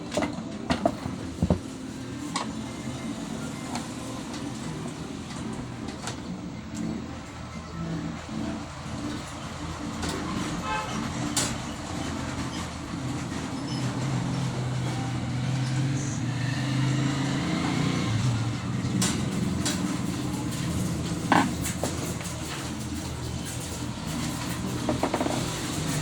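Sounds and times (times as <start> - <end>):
vehicle engine running: 12.8 - 26.0
sharp clicks and knocks: 24.2 - 26.0.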